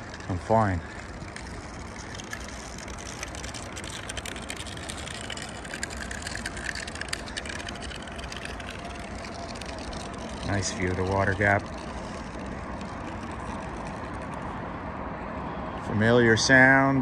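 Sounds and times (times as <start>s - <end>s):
light ticks and crunches: 0.0s - 14.6s
distant highway traffic rumble: 0.0s - 17.0s.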